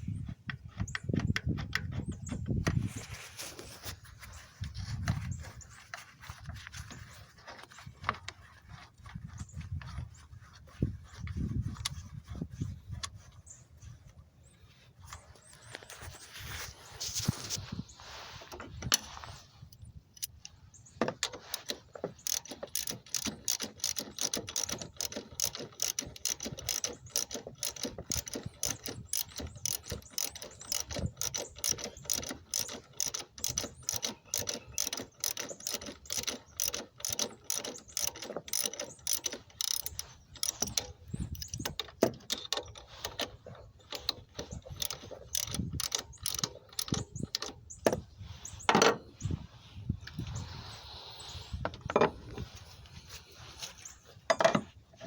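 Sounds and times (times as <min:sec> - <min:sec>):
ratchet wrench clicking: 0:21.3 - 0:48.0.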